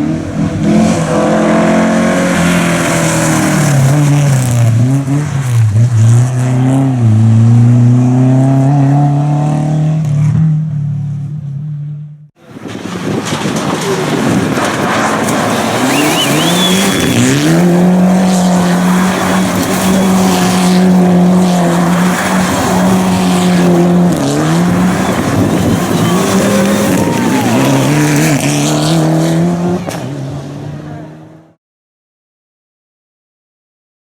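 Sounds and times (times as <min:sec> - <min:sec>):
rally car engine revving: 0:00.0 - 0:31.6
tyre and road noise: 0:00.0 - 0:31.6
high tyre squeal: 0:12.7 - 0:28.9.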